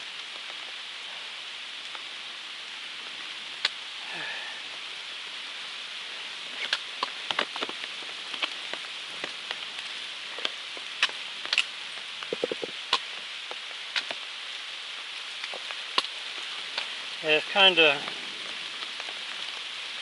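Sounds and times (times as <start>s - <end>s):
steady rain falling: 0.0s - 20.0s
drops tapping on rock: 10.4s - 14.2s, 15.4s - 16.9s.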